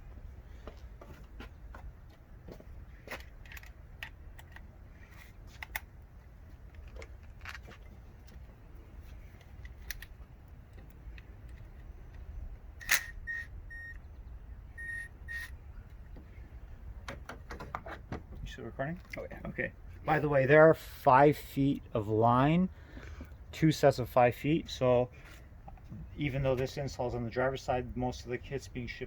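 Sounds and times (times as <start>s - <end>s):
handling clicks and knocks: 3.0s - 4.8s, 17.0s - 18.4s
short high electronic beeps: 14.8s - 15.5s.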